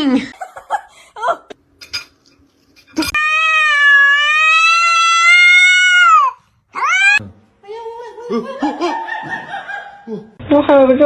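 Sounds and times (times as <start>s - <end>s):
cat meowing: 3.1s - 7.2s.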